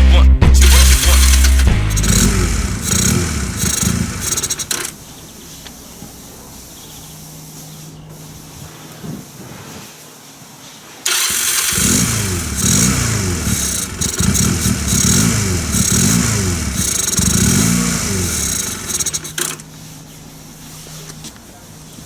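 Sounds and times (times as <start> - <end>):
motorcycle engine revving: 0.0 - 5.4, 11.1 - 19.8.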